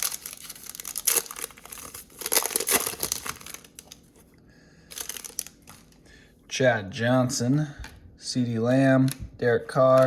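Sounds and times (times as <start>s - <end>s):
foil wrapper crinkling and tearing: 0.0s - 4.1s, 4.9s - 6.0s.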